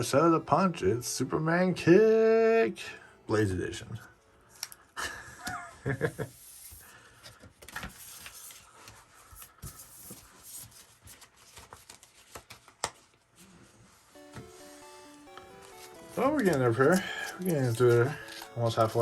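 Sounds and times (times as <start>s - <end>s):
trading cards rustling and clicking: 6.5s - 13.3s, 14.2s - 19.0s
music notes: 14.1s - 19.0s.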